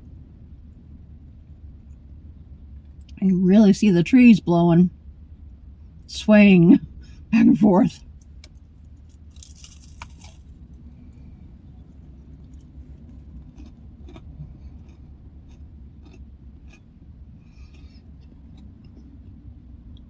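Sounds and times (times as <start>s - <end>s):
steady low hum: 0.0s - 20.0s
chewing with small crunches: 8.0s - 20.0s.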